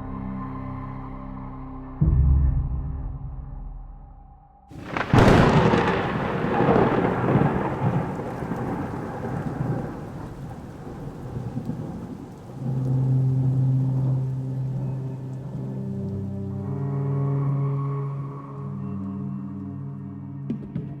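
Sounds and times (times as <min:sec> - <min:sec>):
thunderclap rolling into rumble: 0:04.7 - 0:15.8
low steady music drone: 0:12.2 - 0:21.0.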